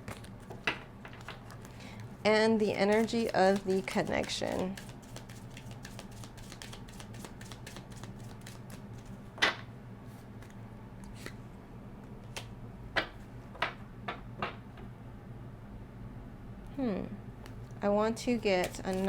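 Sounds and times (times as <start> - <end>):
cards being shuffled: 0.0 - 9.2, 18.4 - 19.0.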